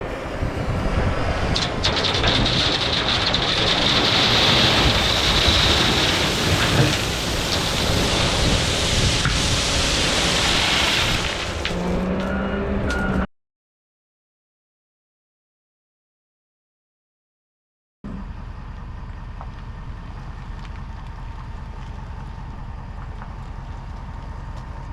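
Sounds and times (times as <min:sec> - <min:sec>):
heavy equipment rushing and rumbling: 0:00.0 - 0:13.3.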